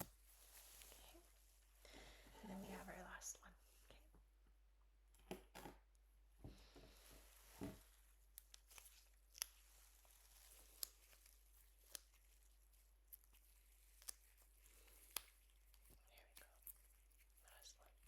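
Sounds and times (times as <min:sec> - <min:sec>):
adhesive strips crinkling and peeling: 0:08.0 - 0:18.0.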